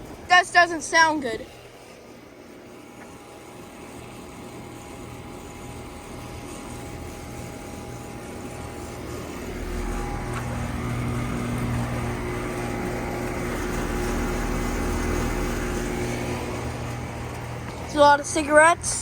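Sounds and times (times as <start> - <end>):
air conditioner unit humming: 0.0 - 19.0
deeper hum: 0.0 - 19.0.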